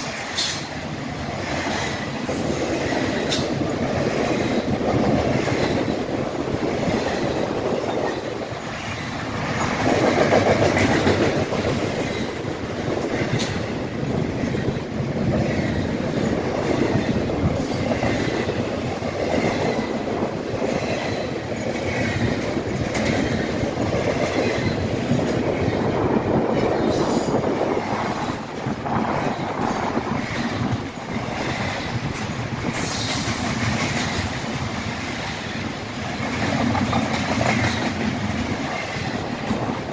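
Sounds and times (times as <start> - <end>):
train wheels clattering over rail joints: 0.0 - 39.9.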